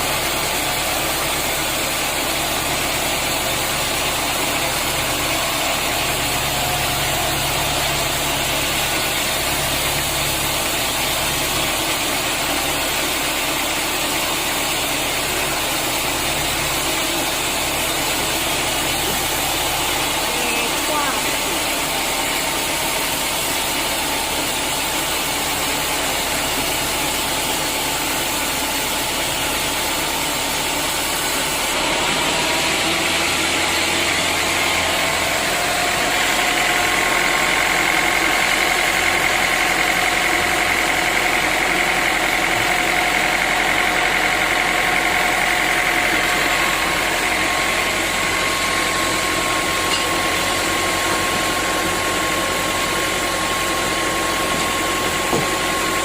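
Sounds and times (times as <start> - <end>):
sawmill machinery running: 0.0 - 56.0.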